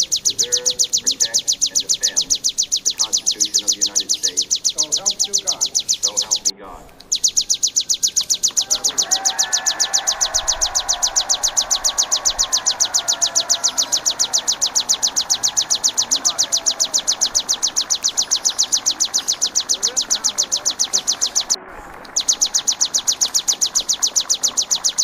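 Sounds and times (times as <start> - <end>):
bird singing rapid high notes: 0.0 - 25.0
faint low whistling notes: 7.2 - 25.0.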